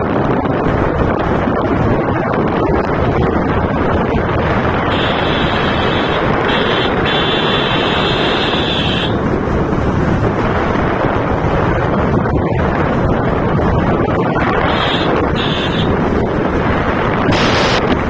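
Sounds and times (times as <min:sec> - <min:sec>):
wind buffeting microphone: 0:00.0 - 0:18.0
motorbike engine running: 0:03.0 - 0:18.0
high steady buzz: 0:04.9 - 0:09.2, 0:14.6 - 0:15.9.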